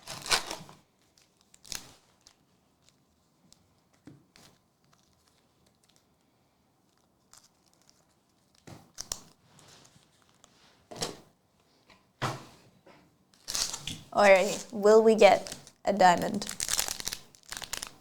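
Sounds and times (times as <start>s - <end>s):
wrapper tearing and crinkling: 0.0s - 3.0s, 6.9s - 9.3s, 13.4s - 14.8s, 15.4s - 18.0s.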